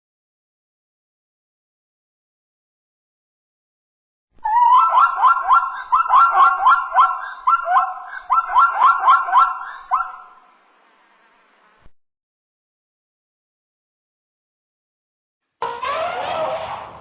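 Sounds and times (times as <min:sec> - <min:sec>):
wild animal calling: 0:04.4 - 0:10.4, 0:15.6 - 0:17.0.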